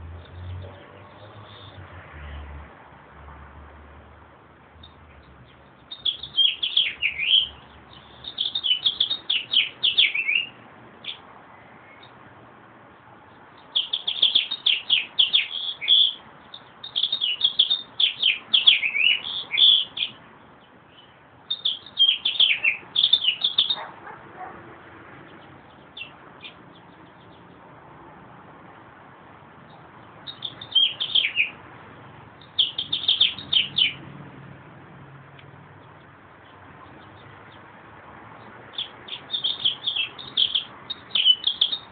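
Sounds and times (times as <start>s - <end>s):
meadowlark singing: 4.8s - 12.2s, 13.0s - 23.8s, 25.2s - 27.7s, 29.6s - 31.6s, 32.4s - 34.1s, 38.4s - 41.9s.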